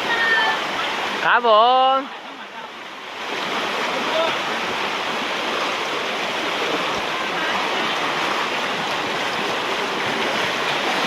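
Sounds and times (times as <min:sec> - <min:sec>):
fast-flowing stream rushing: 0:00.0 - 0:11.0.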